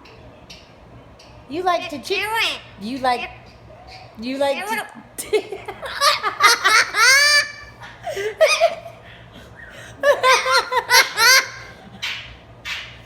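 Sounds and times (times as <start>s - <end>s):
parrot laughing hoots: 4.6s - 12.2s.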